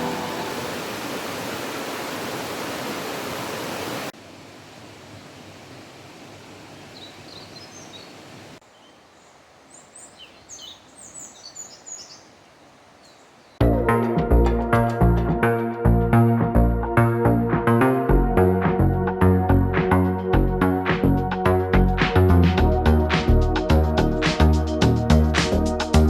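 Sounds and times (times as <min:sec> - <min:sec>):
waterfall rushing: 0:00.0 - 0:04.2
birds chirping: 0:06.9 - 0:13.6.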